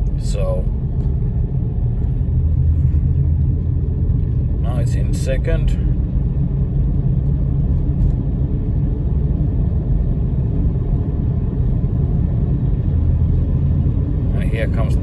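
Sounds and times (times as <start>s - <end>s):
car engine and road rumble: 0.0s - 15.0s.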